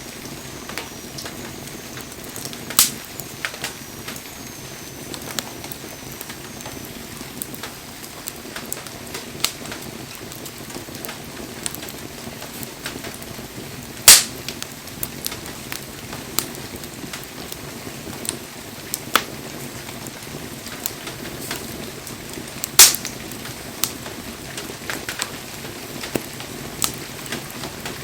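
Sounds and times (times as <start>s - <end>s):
wood fire crackling: 0.0s - 28.0s
faint high whistles: 0.1s - 7.2s
sharp pops: 14.0s - 14.4s.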